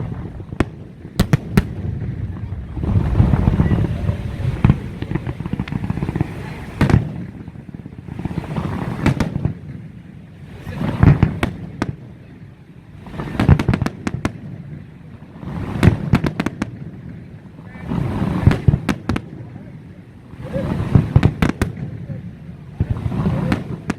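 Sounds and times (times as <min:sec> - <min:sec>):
fireworks shells booming: 0:00.0 - 0:10.0, 0:10.8 - 0:12.1
fireworks crackling: 0:00.0 - 0:23.9.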